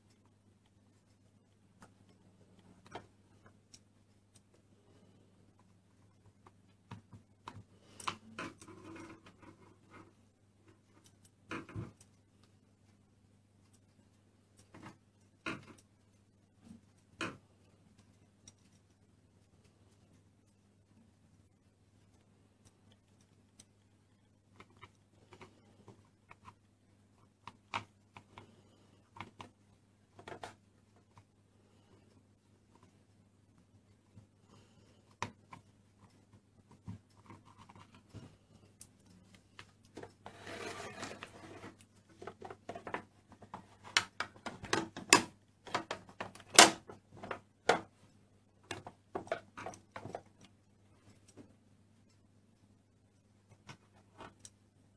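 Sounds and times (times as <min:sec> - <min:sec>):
faint steady hum: 0:00.0 - 0:54.9
plastic toys clicking and tapping: 0:41.7 - 0:48.0.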